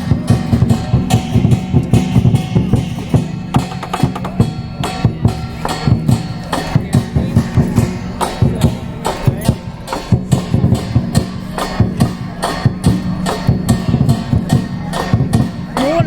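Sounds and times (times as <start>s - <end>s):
cymbals: 0.0s - 16.0s
lion dance drum: 0.0s - 16.0s.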